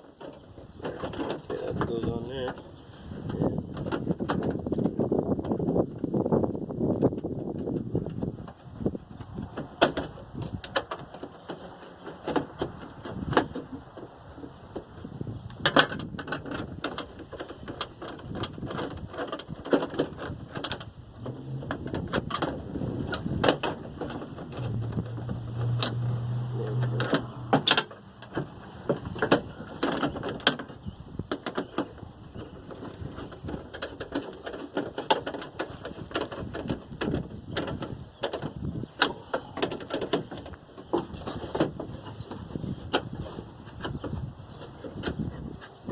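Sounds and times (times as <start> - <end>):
metallic clicks and knocks: 9.2 - 45.8.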